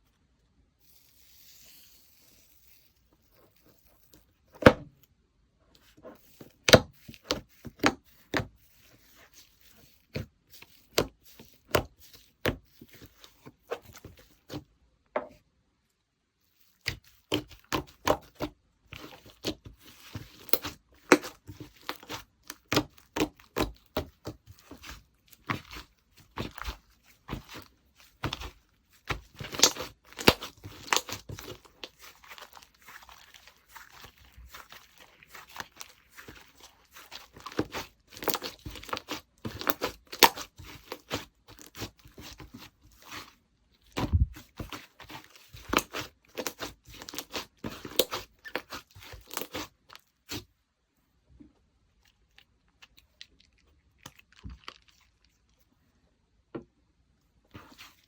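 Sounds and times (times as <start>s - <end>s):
slime squished by hand: 16.6s - 50.5s.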